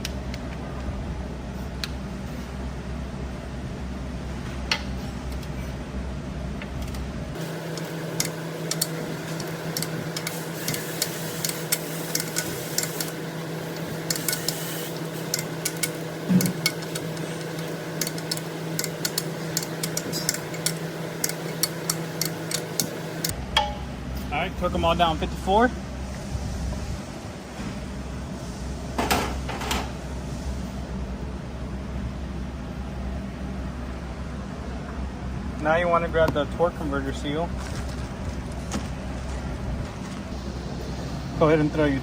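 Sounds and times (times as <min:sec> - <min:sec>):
steady hum: 0:00.0 - 0:42.0
wrench clicking on bolts: 0:07.7 - 0:23.3.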